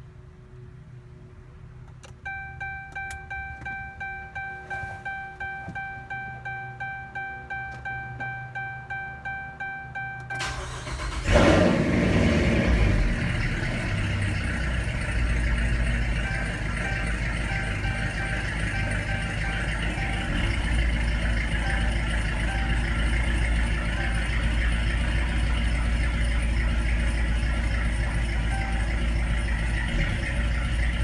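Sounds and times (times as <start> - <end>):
car engine cranking and idling: 1.7 - 31.0
dashboard chime: 2.2 - 10.6, 16.1 - 24.8.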